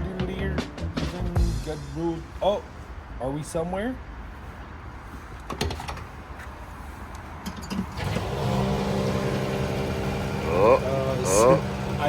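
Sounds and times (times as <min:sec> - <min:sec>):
fuel pump humming: 0:07.5 - 0:12.0.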